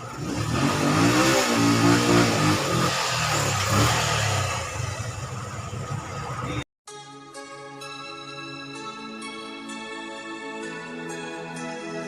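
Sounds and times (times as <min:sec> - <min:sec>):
motorcycle engine revving: 0:00.0 - 0:06.6.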